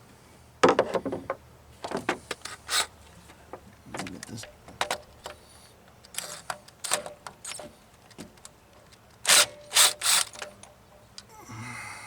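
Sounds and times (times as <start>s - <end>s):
tools and metal parts clanking: 6.1s - 11.2s.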